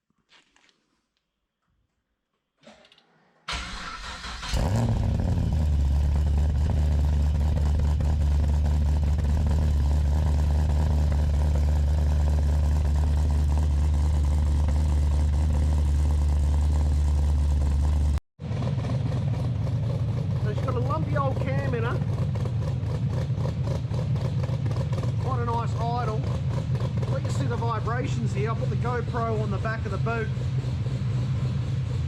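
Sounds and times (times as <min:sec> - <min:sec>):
car engine lumpy idle: 0:03.6 - 0:32.0.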